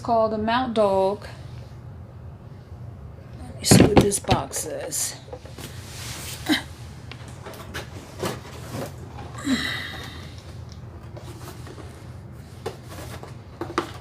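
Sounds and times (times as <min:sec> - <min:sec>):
crinkly packaging rustle: 0:10.0 - 0:14.0.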